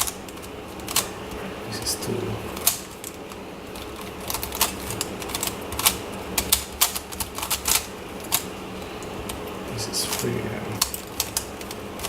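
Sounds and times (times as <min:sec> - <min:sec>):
plastic puzzle clicking: 0:00.0 - 0:01.1, 0:02.6 - 0:08.5, 0:10.8 - 0:12.0.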